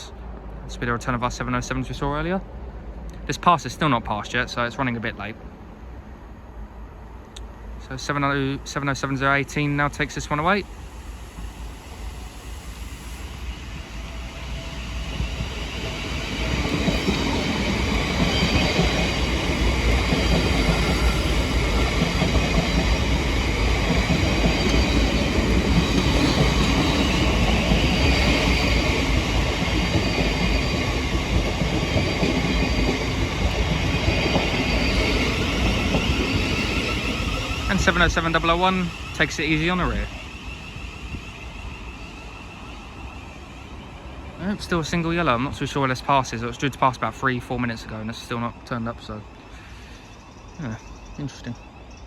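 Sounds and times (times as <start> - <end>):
train wheels on rails: 6.8 - 52.0
train motors: 9.3 - 52.0
rail clatter: 14.4 - 41.3
faint wheel squeal: 34.3 - 45.0.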